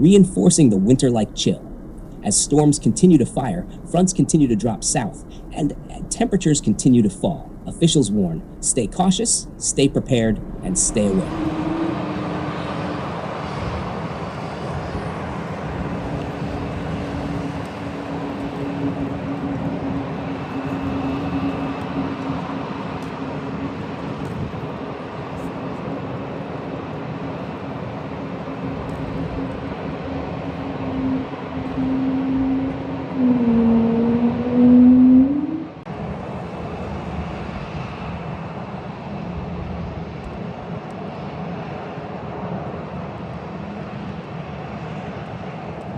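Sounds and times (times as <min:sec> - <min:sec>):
steady rumble: 0:00.0 - 0:13.4, 0:28.6 - 0:35.9
rushing noise: 0:00.0 - 0:14.9
engine drone: 0:00.0 - 0:35.9.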